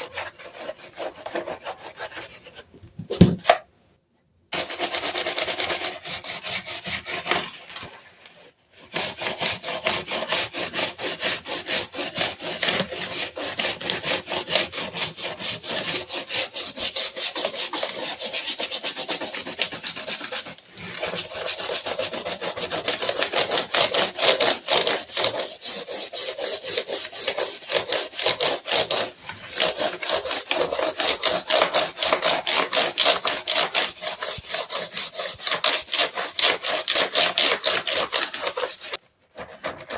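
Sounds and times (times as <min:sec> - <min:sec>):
scrubbing on a keyboard: 0:08.9 - 0:39.9.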